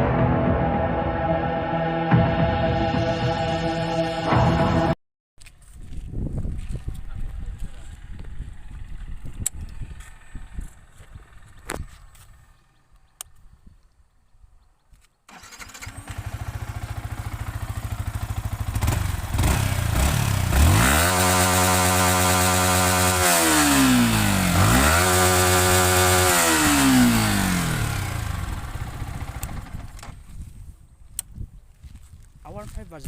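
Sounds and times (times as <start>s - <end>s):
motorcycle engine idling and revving: 5.6s - 30.7s.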